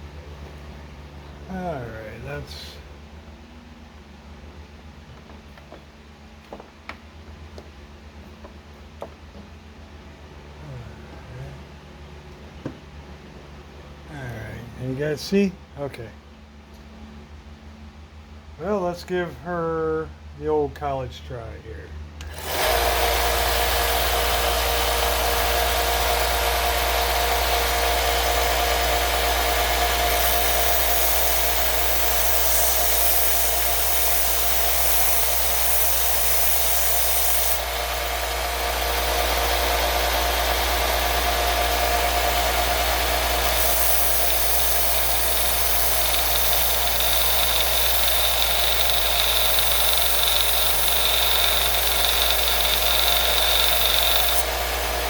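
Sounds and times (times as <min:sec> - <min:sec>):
belt sander running: 0:22.2 - 0:55.0.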